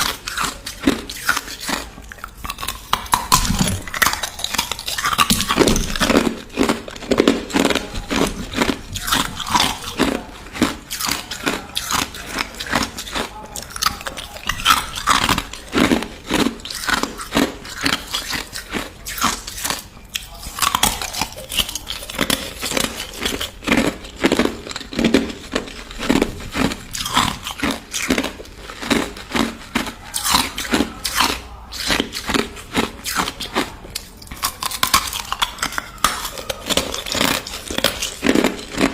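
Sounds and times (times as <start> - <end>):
crushed ice being chewed: 0.0 - 38.9.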